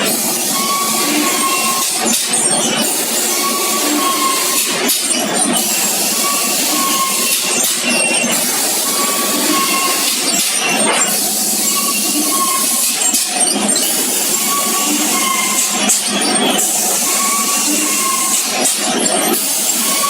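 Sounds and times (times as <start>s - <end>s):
mechanical clatter: 0.0s - 20.0s.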